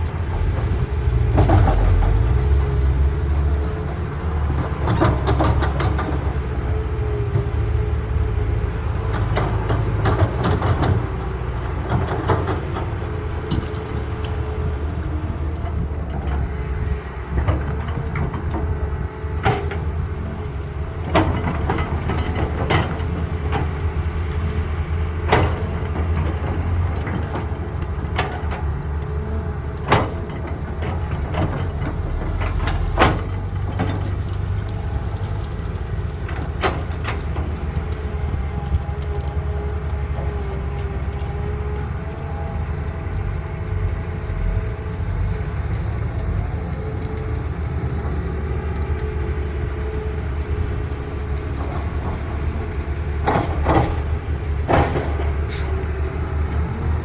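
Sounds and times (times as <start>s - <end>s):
excavator diesel engine running: 0.0s - 57.0s
metal knocks and clanks: 0.1s - 2.8s.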